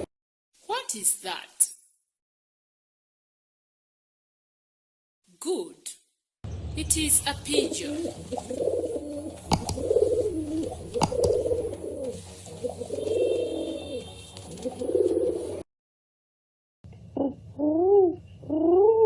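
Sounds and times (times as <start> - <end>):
pigeon cooing: 8.0 - 15.6, 17.2 - 19.0
sharp clicks: 9.5 - 9.9, 11.0 - 11.4.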